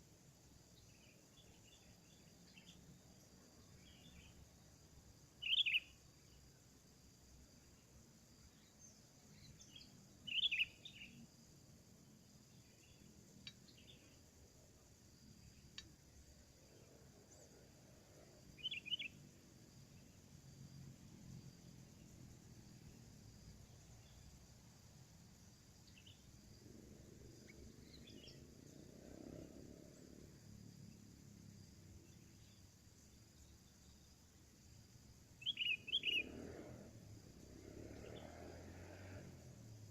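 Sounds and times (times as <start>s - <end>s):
faint outdoor background noise: 0.0s - 39.9s
faint bird chirps: 0.7s - 6.6s, 7.4s - 11.3s, 12.5s - 20.3s, 21.6s - 24.4s, 25.4s - 30.0s, 31.9s - 39.2s
sharp tick: 15.7s - 16.0s.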